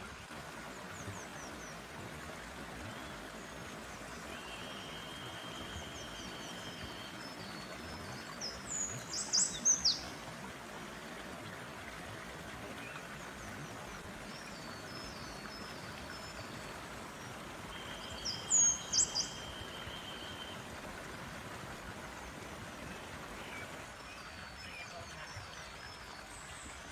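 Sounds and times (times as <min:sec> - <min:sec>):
stream water running: 0:00.0 - 0:26.9
bird singing: 0:04.0 - 0:10.1, 0:17.7 - 0:20.6.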